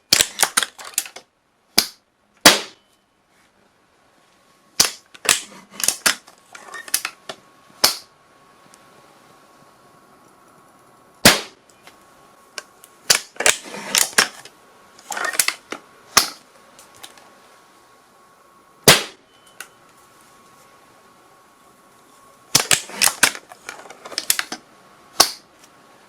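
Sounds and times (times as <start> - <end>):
gunshots: 2.4 - 2.8, 11.2 - 11.6, 18.9 - 19.2.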